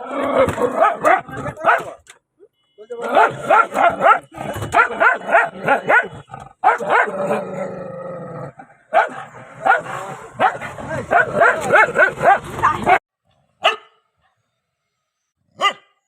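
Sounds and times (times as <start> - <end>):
dog barking: 0.5 - 2.0, 3.1 - 7.4, 8.9 - 13.0, 13.6 - 14.0, 15.6 - 16.0.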